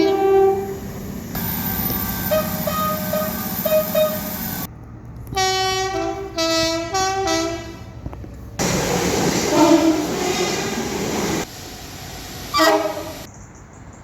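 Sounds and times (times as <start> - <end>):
train horn: 0.0 - 0.8, 1.4 - 4.3, 5.4 - 8.0, 9.5 - 10.7, 12.5 - 13.3.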